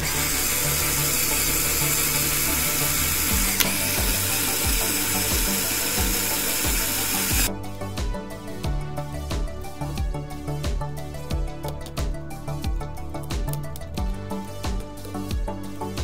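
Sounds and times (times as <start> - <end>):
plastic gears ratcheting: 0.0 - 7.5
background music with beat: 0.0 - 16.0
sharp click: 3.2 - 7.5.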